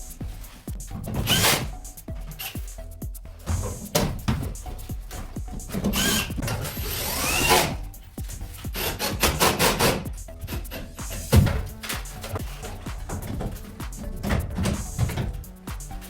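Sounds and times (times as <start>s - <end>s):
knocks scraping and rubbing: 0.0s - 16.0s.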